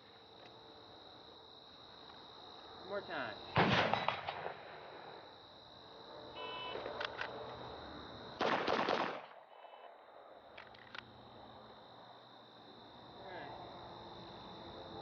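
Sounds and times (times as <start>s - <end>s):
handgun shots: 8.4s - 9.3s.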